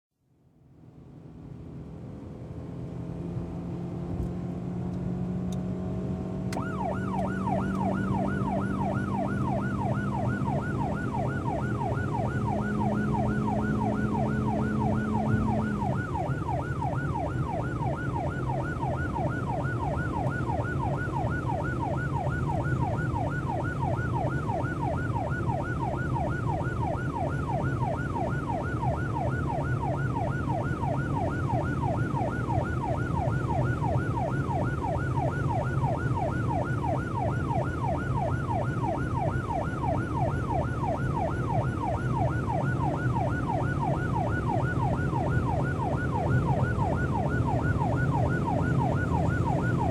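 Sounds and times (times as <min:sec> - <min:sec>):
car engine running: 0:00.5 - 0:21.0
police siren sweeping: 0:00.9 - 0:49.9.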